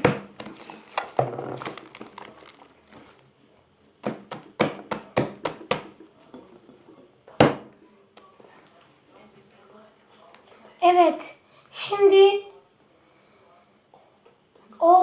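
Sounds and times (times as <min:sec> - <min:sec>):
slime sticky pops: 0:00.0 - 0:03.2, 0:04.0 - 0:06.0.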